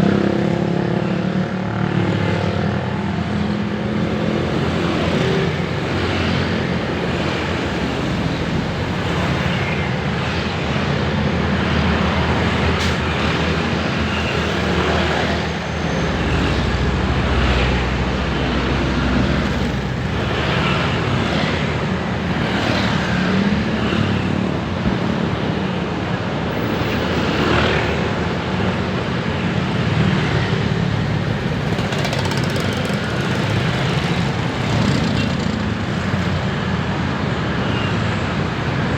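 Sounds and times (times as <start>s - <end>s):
road traffic passing: 0.0s - 38.9s.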